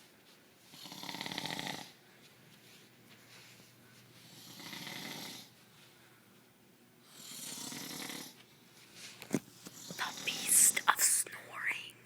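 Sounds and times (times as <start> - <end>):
man snoring: 0.8 - 2.0, 4.5 - 5.5, 7.2 - 8.4.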